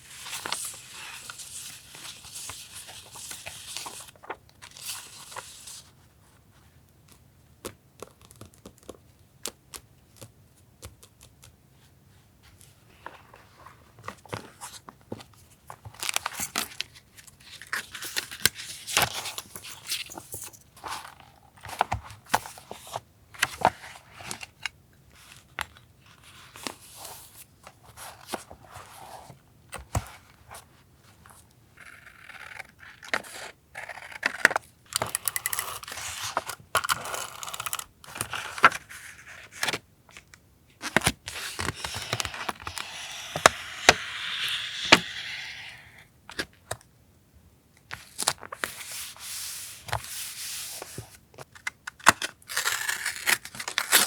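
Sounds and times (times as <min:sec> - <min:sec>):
paper tearing: 0:41.4 - 0:46.0.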